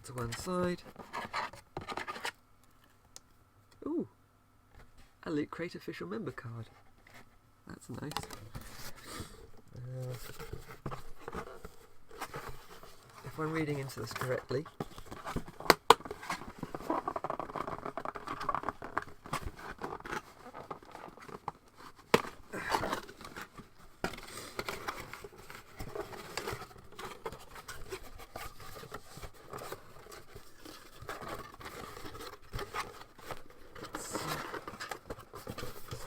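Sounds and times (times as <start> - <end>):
cardboard rustling and scraping: 0.0 - 2.4, 8.0 - 36.0.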